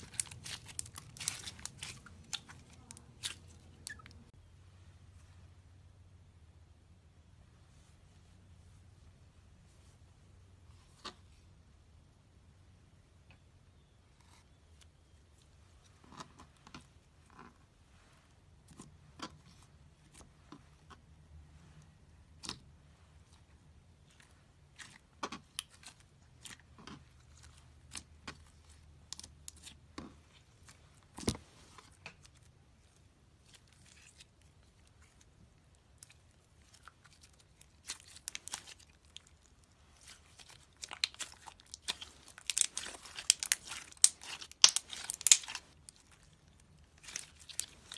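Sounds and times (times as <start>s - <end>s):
slime popping and crackling: 0.0s - 4.3s, 33.5s - 47.9s.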